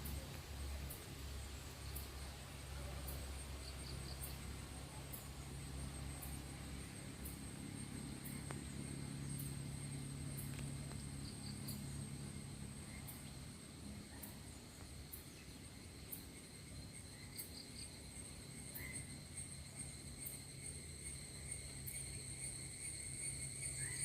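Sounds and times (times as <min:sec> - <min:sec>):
distant vehicle engine hum: 0:00.0 - 0:16.5
high insect buzz: 0:00.0 - 0:24.0
faint ticks: 0:07.2 - 0:08.7, 0:10.4 - 0:11.9.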